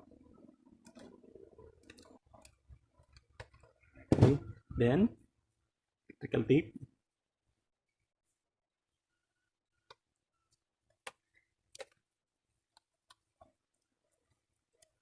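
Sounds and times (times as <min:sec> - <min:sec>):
electrical tape clicks and crackles: 0:09.8 - 0:12.1.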